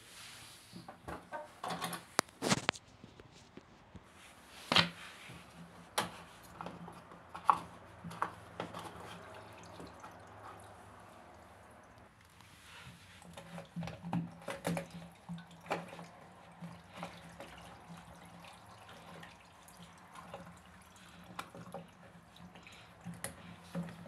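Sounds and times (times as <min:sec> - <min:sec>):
knocks and clicks handling parts: 0:00.8 - 0:02.8, 0:04.7 - 0:10.5
water dripping: 0:08.0 - 0:12.1, 0:13.3 - 0:24.0.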